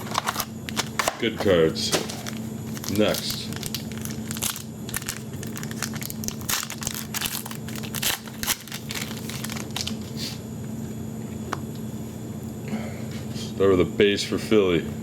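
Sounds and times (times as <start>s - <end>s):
steady low hum: 0.0s - 15.0s
wrapper crinkling and tearing: 1.9s - 10.1s.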